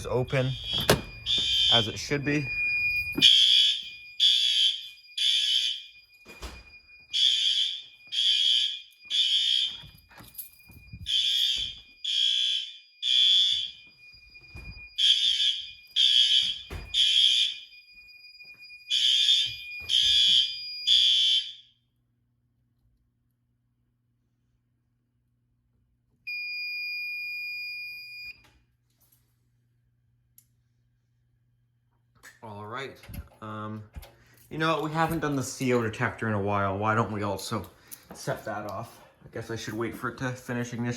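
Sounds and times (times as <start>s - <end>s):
fire alarm horn blasts: 0.0s - 21.9s, 26.3s - 28.4s.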